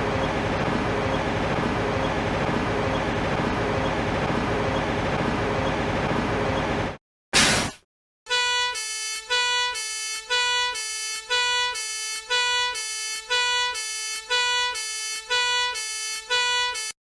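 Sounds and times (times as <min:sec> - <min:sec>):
two-tone fire engine siren: 0:08.3 - 0:17.0.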